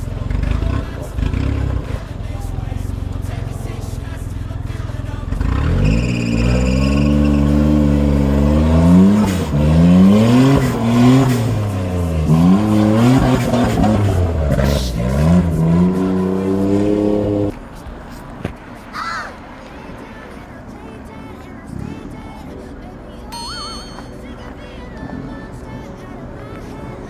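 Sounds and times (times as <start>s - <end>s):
off-road vehicle engine revving: 0.0s - 17.6s.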